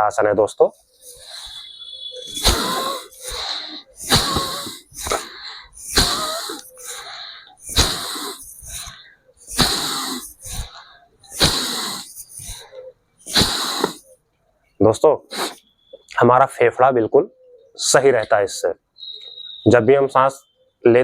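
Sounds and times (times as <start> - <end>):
forceful breathing in and out: 0.8 - 14.2, 15.3 - 15.6.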